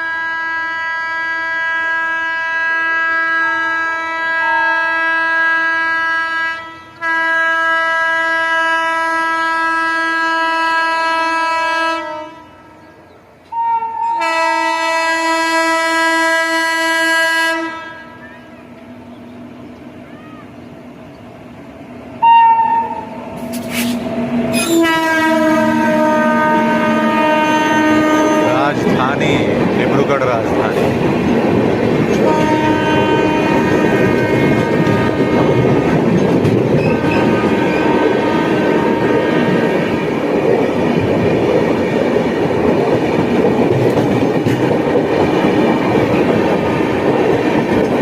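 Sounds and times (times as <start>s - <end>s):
locomotive horn blasts: 0.0s - 12.6s, 13.5s - 18.5s, 22.2s - 23.2s, 24.5s - 28.8s, 32.1s - 36.0s, 36.8s - 40.0s
train wheels rumbling and clattering: 23.1s - 48.0s
short hiss: 23.4s - 24.1s.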